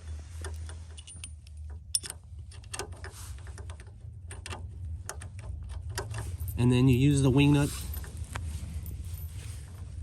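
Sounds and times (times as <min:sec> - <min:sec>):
low hum: 0:00.0 - 0:10.0
metallic clicks of bolt: 0:00.4 - 0:06.3.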